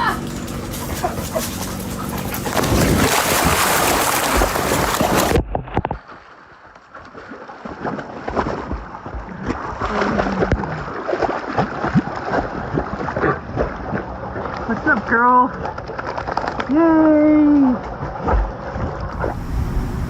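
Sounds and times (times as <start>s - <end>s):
rushing water: 0.0s - 6.6s
water splashes: 0.0s - 20.0s
wind noise on microphone: 2.4s - 5.9s, 18.8s - 20.0s.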